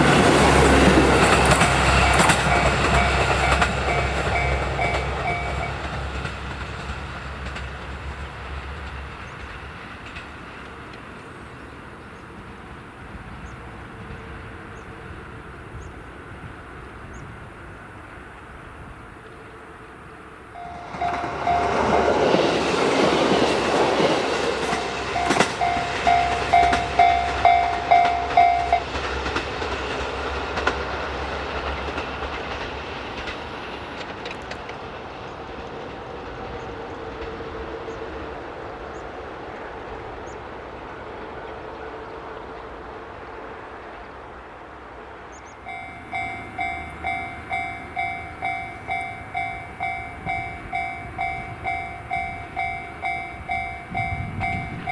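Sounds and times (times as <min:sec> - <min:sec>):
crossing warning bell ringing: 0:00.0 - 0:07.7, 0:20.6 - 0:29.4, 0:45.4 - 0:54.9
diesel railcar passing: 0:00.0 - 0:54.9.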